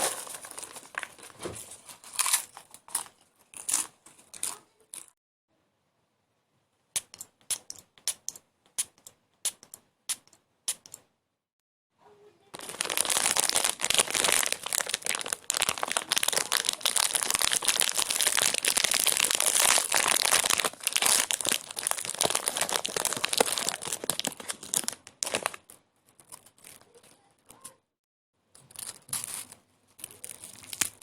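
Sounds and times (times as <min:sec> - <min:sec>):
crinkling and crumpling: 0:00.0 - 0:05.1, 0:12.5 - 0:27.8, 0:28.6 - 0:31.0.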